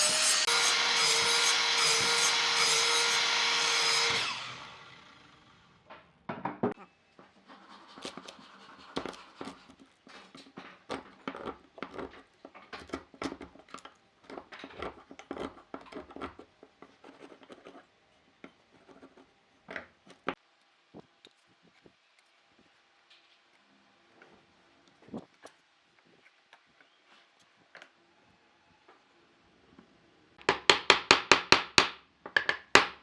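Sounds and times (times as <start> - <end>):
quick irregular scratching: 7.4 - 11.2.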